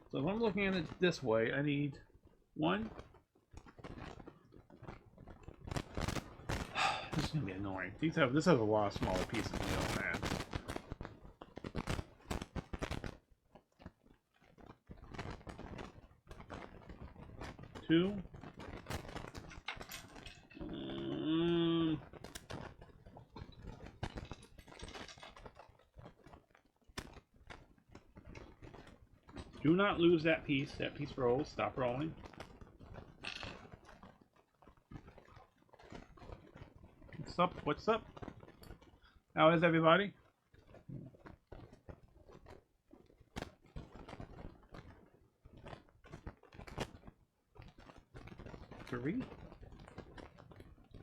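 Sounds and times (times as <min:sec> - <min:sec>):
plastic bricks clicking and rattling: 0:13.8 - 0:39.0.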